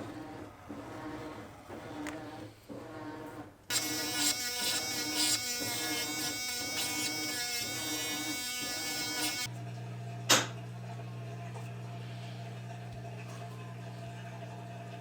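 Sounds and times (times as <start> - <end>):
small electric motor tool buzzing: 3.7 - 9.5.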